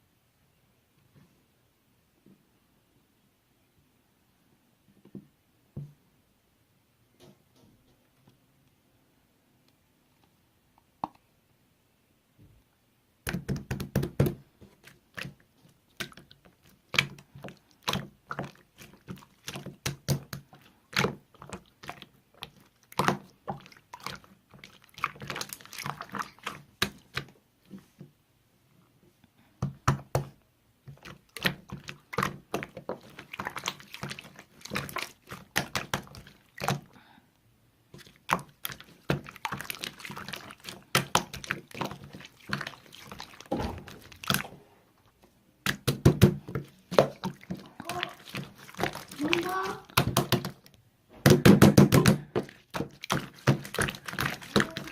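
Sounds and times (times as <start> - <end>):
slime squished by hand: 13.2 - 27.4, 29.8 - 37.0, 38.0 - 44.6, 45.6 - 50.7, 51.3 - 54.9.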